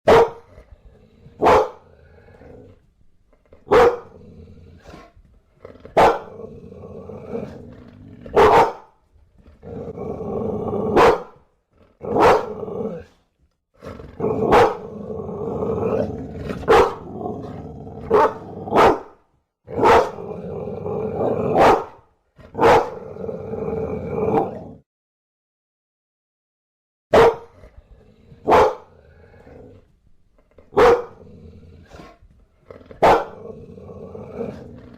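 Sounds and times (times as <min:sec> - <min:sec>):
dog barking: 0:00.1 - 0:00.5, 0:01.4 - 0:01.9, 0:03.7 - 0:04.2, 0:06.0 - 0:06.3, 0:08.3 - 0:09.0, 0:10.9 - 0:11.4, 0:12.1 - 0:12.6, 0:14.4 - 0:14.9, 0:16.6 - 0:17.1, 0:18.1 - 0:19.2, 0:19.8 - 0:20.3, 0:21.5 - 0:22.0, 0:22.6 - 0:23.0, 0:27.1 - 0:27.6, 0:28.4 - 0:29.0, 0:30.7 - 0:31.2, 0:33.0 - 0:33.4
dog growling: 0:00.2 - 0:08.5, 0:09.3 - 0:19.1, 0:19.7 - 0:21.6, 0:22.4 - 0:24.9, 0:27.4 - 0:34.9.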